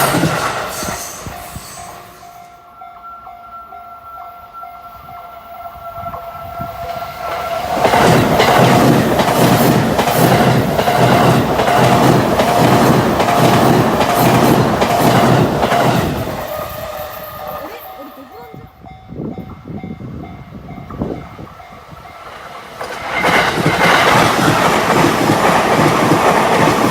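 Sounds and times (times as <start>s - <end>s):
crossing warning bell dinging: 0.0s - 26.9s
train passing loudly: 0.0s - 26.9s
wheels clacking over rail joints: 6.1s - 16.9s, 22.0s - 26.9s.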